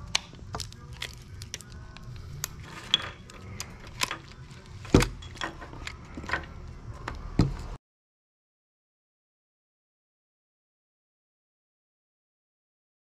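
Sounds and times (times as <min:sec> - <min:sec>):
metal parts and tools clinking: 0:00.1 - 0:07.2.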